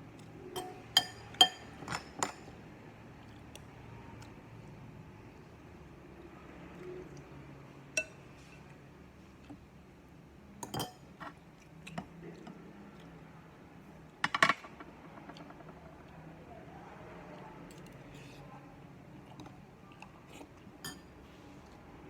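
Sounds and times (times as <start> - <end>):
dishes and utensils clinking: 0.6 - 2.5, 10.6 - 11.4, 20.8 - 21.1.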